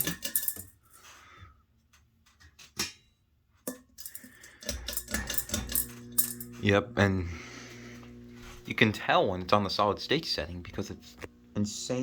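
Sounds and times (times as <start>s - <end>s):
low steady hum: 4.0s - 12.0s.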